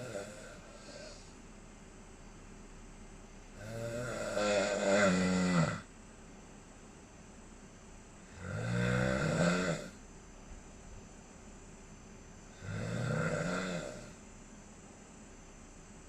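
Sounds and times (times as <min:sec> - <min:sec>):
buzzing snores: 0:00.0 - 0:01.4, 0:03.5 - 0:05.9, 0:08.2 - 0:10.1, 0:12.5 - 0:14.3
quiet breathing: 0:00.0 - 0:02.5, 0:12.3 - 0:14.4.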